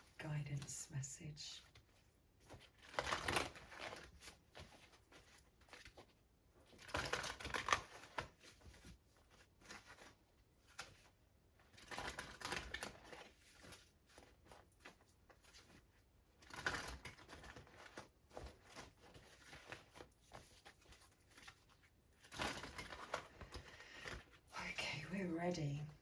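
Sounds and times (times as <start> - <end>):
cards shuffled by hand: 1.7 - 24.5.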